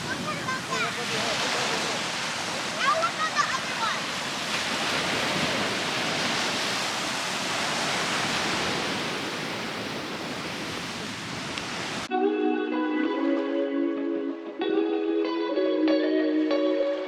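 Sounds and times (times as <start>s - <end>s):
ocean surf washing onto beach: 0.0s - 12.1s
plucked guitar music: 12.1s - 17.0s.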